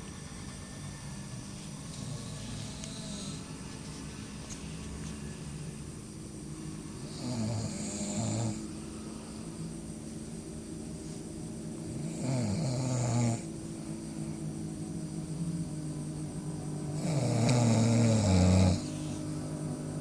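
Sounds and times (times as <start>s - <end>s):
person snoring: 1.9s - 3.6s, 7.1s - 8.6s, 12.0s - 13.5s, 17.0s - 19.2s.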